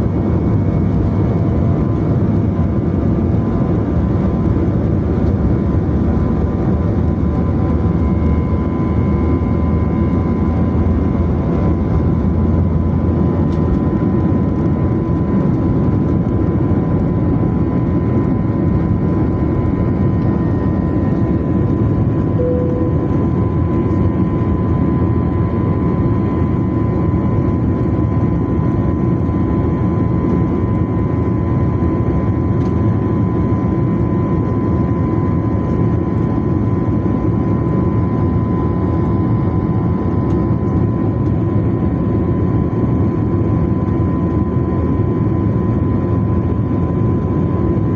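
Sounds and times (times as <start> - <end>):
jet engines roaring in cabin: 0.0 - 47.9
thin steady whine: 4.7 - 34.4.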